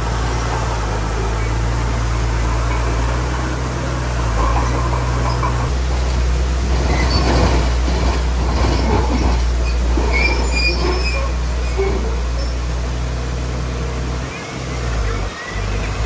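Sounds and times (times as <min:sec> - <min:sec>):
bulldozer diesel engine running: 0:00.0 - 0:16.0
steel tracks squealing: 0:00.0 - 0:16.0.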